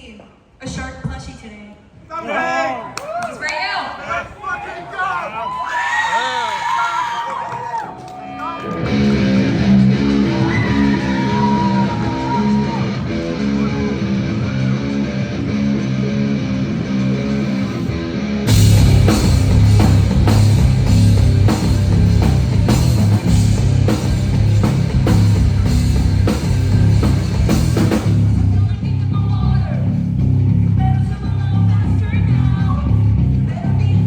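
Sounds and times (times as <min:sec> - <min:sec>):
drums beating: 0:07.2 - 0:15.6, 0:18.5 - 0:34.0
guitar riff: 0:08.6 - 0:28.3
bass guitar: 0:08.6 - 0:34.0.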